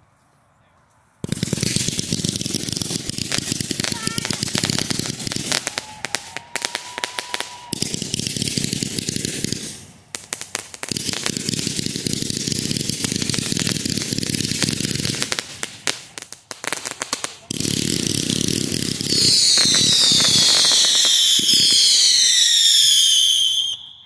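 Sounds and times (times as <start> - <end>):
fireworks bangs: 1.2 - 24.0
fireworks crackling: 1.2 - 24.0
firework whistle: 1.7 - 9.9, 19.0 - 24.0.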